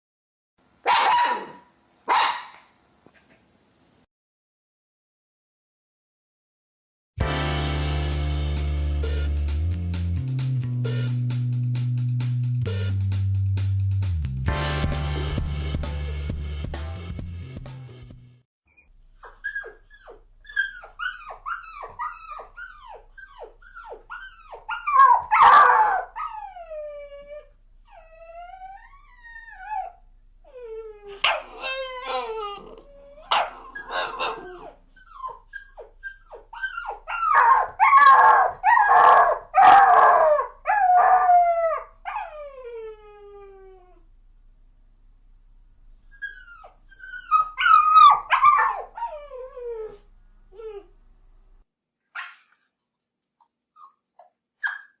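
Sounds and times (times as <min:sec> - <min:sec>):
puppies whining and yelping: 0:18.7 - 0:43.9, 0:45.9 - 0:50.0.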